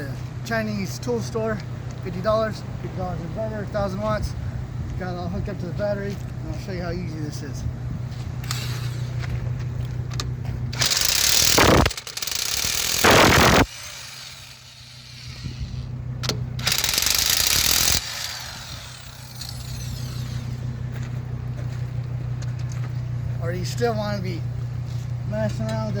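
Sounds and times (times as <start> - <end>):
steady low hum: 0.0 - 26.0
impact wrench hammering: 10.8 - 15.4, 16.2 - 20.6.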